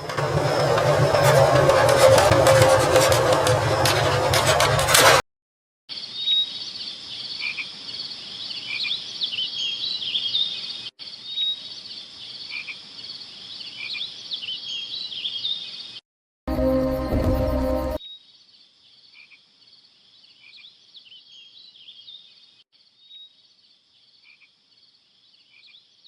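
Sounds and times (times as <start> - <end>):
frogs chirping: 5.9 - 16.0, 18.0 - 21.4, 22.9 - 26.0.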